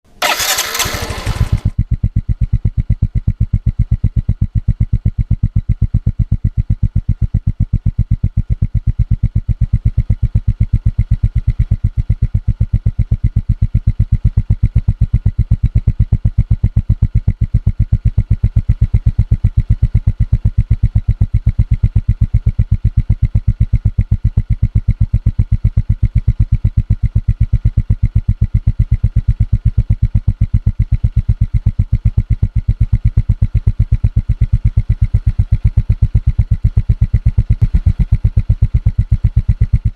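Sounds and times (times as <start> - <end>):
starter motor cranking engine: 0.1 - 1.7, 37.6 - 38.2.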